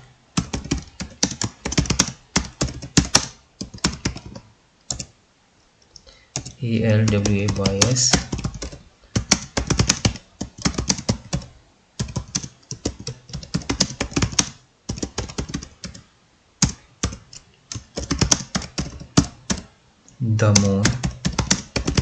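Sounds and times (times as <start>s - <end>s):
fast typing on laptop keyboard: 0.4s - 5.1s, 6.3s - 16.0s, 16.6s - 19.7s, 20.4s - 22.0s.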